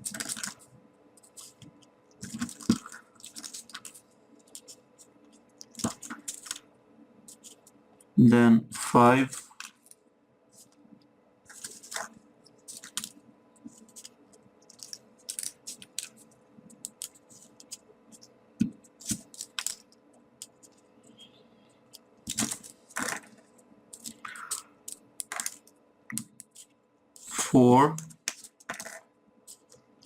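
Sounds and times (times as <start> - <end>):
paper crinkles and clicks: 0.0 - 6.7, 7.3 - 7.7, 11.5 - 18.3, 18.9 - 20.8, 22.3 - 27.3, 28.1 - 29.8.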